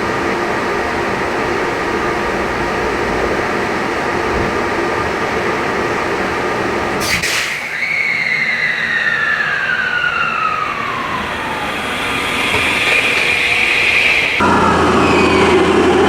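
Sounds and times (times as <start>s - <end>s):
loud train sound: 0.0s - 16.0s
train whine falling in pitch: 0.0s - 16.0s
air valve hissing burst: 7.0s - 15.8s.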